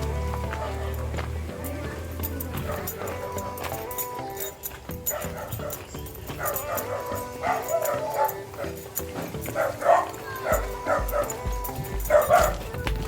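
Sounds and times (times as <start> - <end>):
music through sound system: 0.0 - 13.0
dog barking and yelping: 2.5 - 3.4, 5.0 - 12.7.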